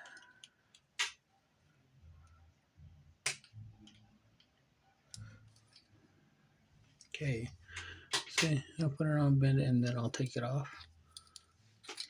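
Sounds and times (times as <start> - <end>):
faint ticks and handling noise: 3.3 - 12.0.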